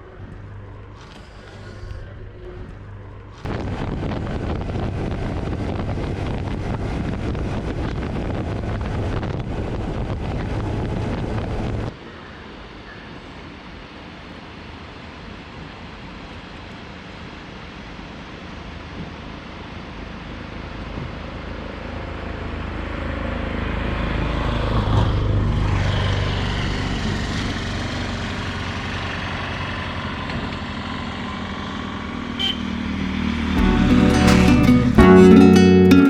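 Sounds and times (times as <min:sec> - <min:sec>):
road noise: 0:19.9 - 0:36.0.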